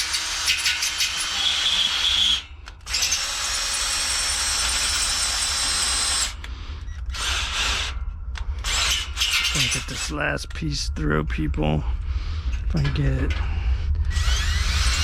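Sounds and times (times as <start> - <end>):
electric drill boring steel: 0.0 - 8.0, 8.6 - 10.1, 14.0 - 15.0.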